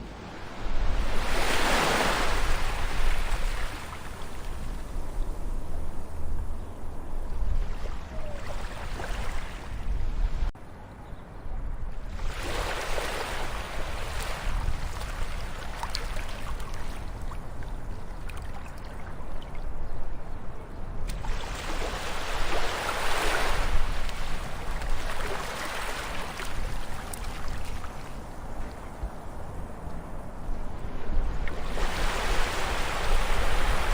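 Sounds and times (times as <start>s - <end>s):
waves breaking: 0.0s - 5.2s, 7.5s - 9.9s, 12.1s - 19.3s, 21.1s - 29.6s, 30.8s - 33.9s
ocean waves washing ashore: 0.0s - 10.5s, 12.0s - 19.5s, 21.1s - 33.9s.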